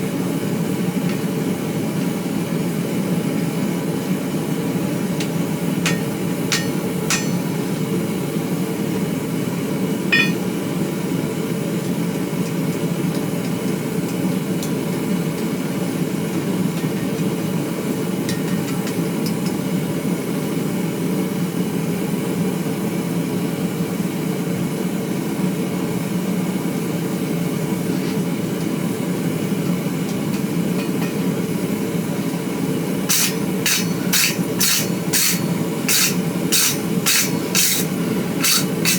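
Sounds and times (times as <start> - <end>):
hammer striking steel on anvil: 5.2 - 7.8, 10.1 - 10.4, 33.1 - 38.9.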